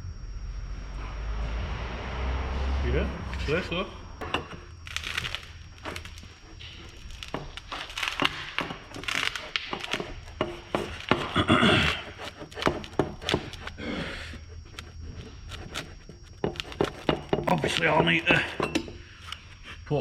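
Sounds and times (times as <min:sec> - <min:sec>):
metal scraping rush: 0:00.6 - 0:20.0.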